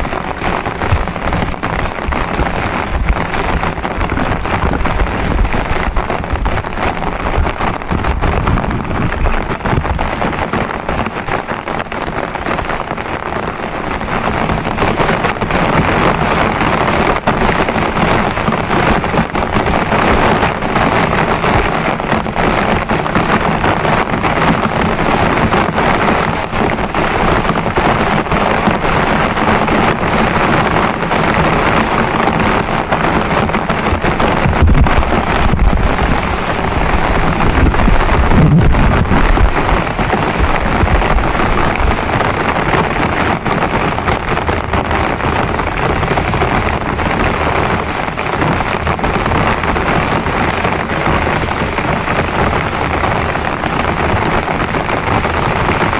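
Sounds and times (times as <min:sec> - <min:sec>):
heavy rain pouring: 0:00.0 - 0:55.9
deep low rumble: 0:33.9 - 0:42.2.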